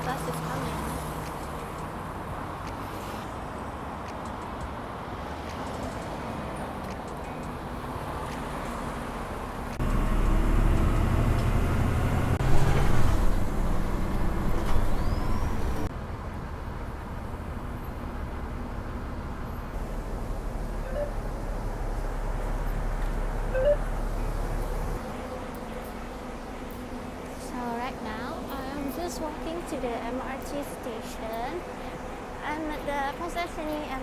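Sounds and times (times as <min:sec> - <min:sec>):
road traffic: 0:00.0 - 0:34.0
bus engine running: 0:05.4 - 0:34.0.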